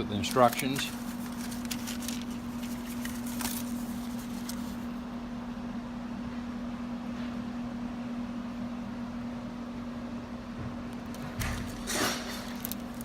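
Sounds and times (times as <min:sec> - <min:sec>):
handling clicks and rustles: 0:00.0 - 0:04.9
steady low hum: 0:00.0 - 0:13.0.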